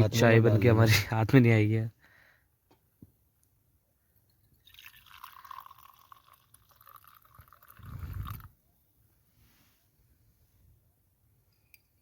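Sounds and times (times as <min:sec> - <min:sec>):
tea pouring into a cup: 0:04.2 - 0:08.6.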